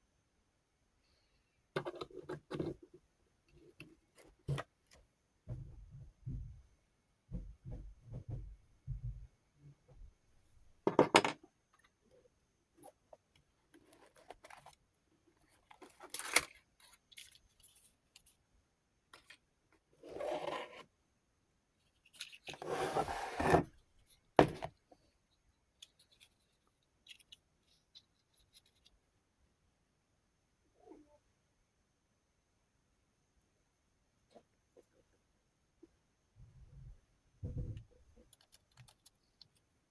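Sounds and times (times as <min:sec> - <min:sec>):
scraping and rustling: 0:21.9 - 0:24.8.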